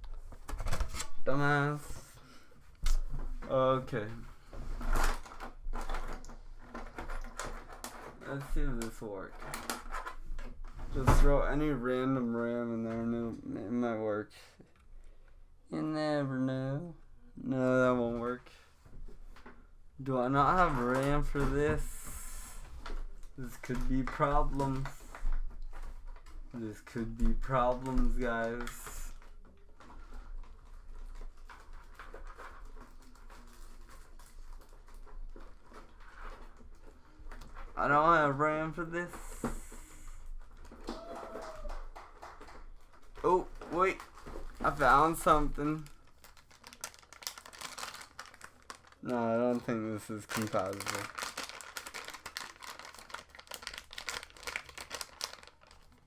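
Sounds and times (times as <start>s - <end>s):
packaging crinkling: 42.4s - 56.0s.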